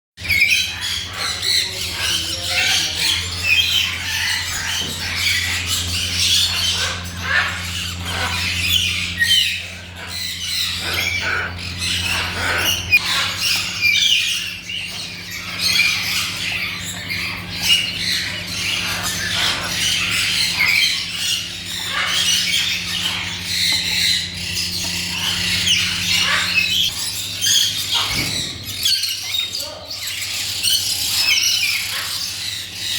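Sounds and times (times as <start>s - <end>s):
flock of birds squawking: 0.2s - 32.9s.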